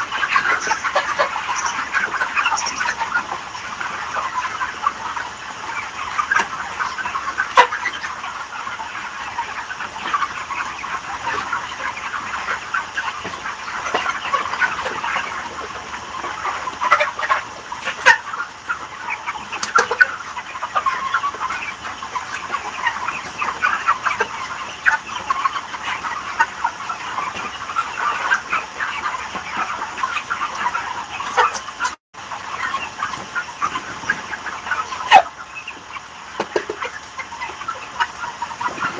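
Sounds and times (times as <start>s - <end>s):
chickens clucking: 0.0s - 38.9s.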